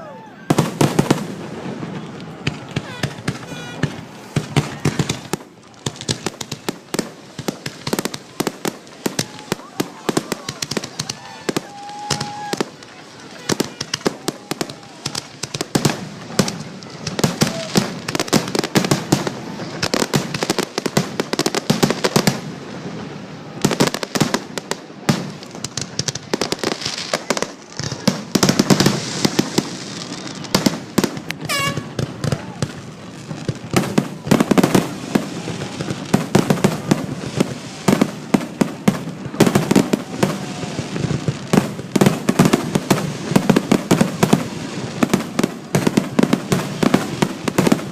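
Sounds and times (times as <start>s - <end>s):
falling firework whistle: 9.1s - 15.2s, 31.4s - 32.7s
firework shells bursting: 25.2s - 35.2s.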